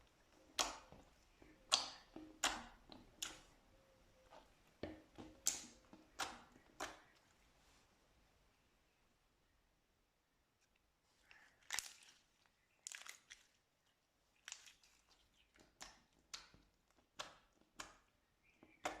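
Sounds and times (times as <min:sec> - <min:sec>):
slime squelching and popping: 0:00.3 - 0:03.6, 0:04.2 - 0:07.2, 0:14.4 - 0:18.1.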